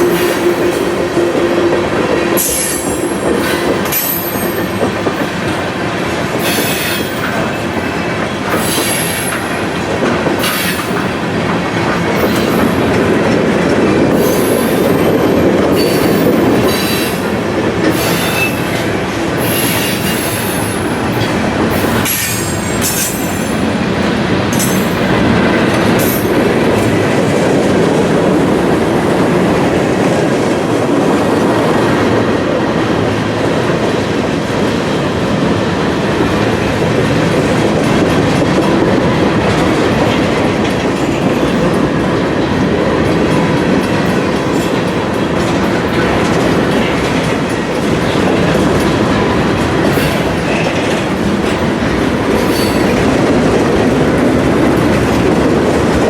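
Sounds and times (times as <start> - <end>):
train cars rumbling by: 0.0 - 56.0
wheels clacking over rail joints: 0.0 - 56.0.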